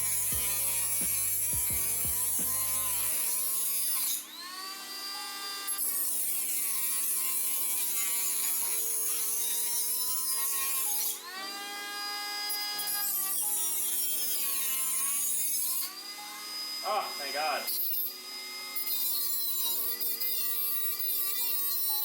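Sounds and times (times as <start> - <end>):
rotary tool cutting metal: 0.0 - 22.0.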